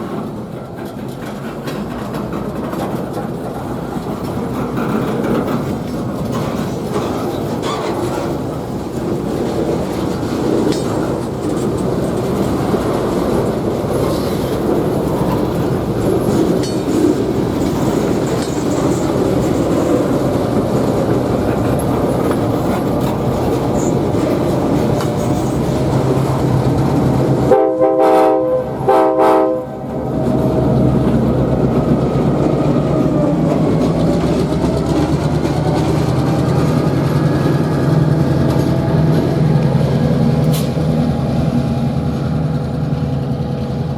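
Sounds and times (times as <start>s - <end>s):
train wheels clicking over rails: 0.0s - 27.9s, 28.6s - 43.9s
train air horn blasts: 27.5s - 29.9s.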